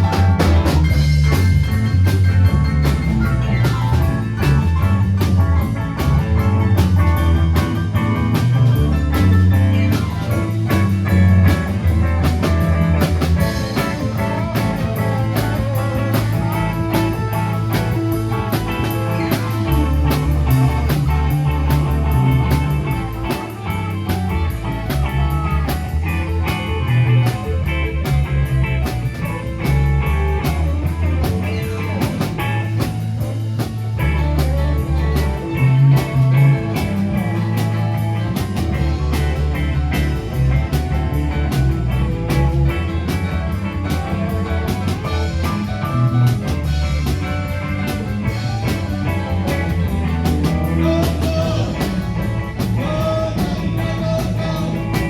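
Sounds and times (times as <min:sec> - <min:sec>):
drum kit beat: 0:00.0 - 0:55.0
electric guitar: 0:00.0 - 0:55.0
rock band playing: 0:00.0 - 0:55.0.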